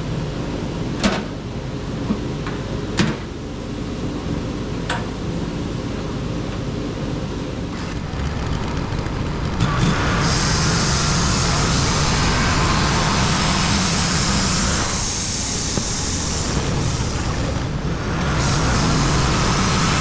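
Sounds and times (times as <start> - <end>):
sawmill engine running: 7.1 - 20.0.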